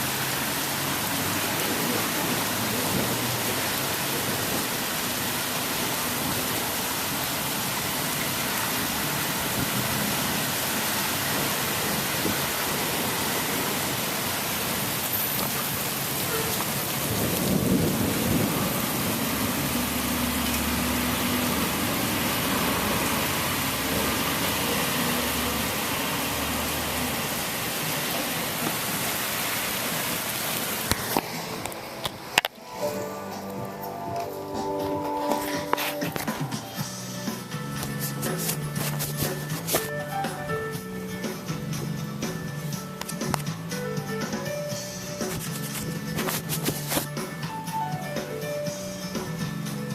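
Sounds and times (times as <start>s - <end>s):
steady rain: 0.0s - 49.9s
thunder rumbling: 1.2s - 37.8s.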